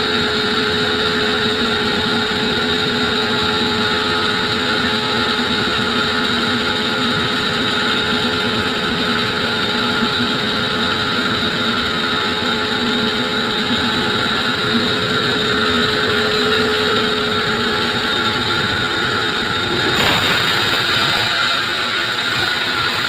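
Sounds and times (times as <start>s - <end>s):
saw cutting wood: 13.6s - 23.0s.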